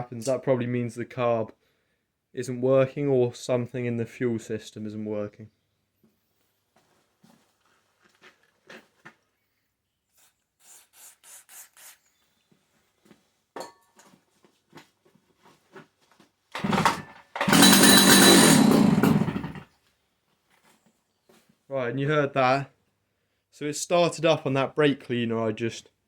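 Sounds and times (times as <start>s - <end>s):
spray can hissing: 10.2s - 12.0s
chainsaw engine running loudly: 16.6s - 19.6s.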